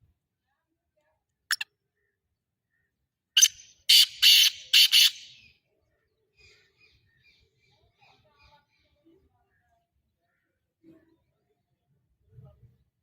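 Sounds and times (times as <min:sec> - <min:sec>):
francolin harsh rasping call: 0:03.4 - 0:05.5.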